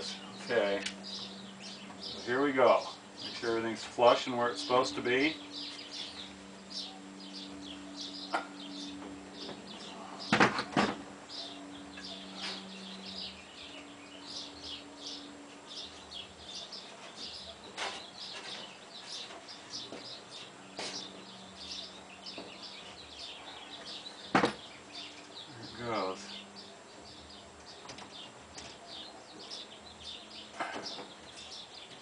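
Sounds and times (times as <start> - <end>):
small birds chirping: 0.0 - 32.0
steady low hum: 0.0 - 32.0
knocks and clicks of wood and tools: 10.3 - 11.0, 24.3 - 24.6.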